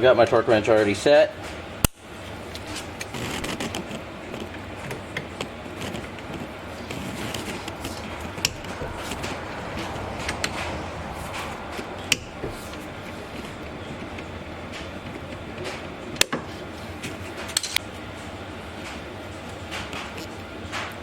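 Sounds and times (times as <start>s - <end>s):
steady background noise: 0.0s - 21.0s.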